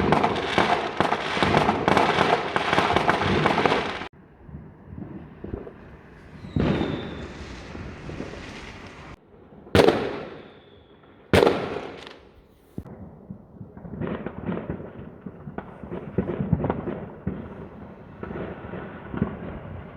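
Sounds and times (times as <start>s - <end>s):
fireworks crackling pops: 0.0s - 9.2s, 9.8s - 19.9s
fireworks bangs with echo: 0.0s - 19.9s.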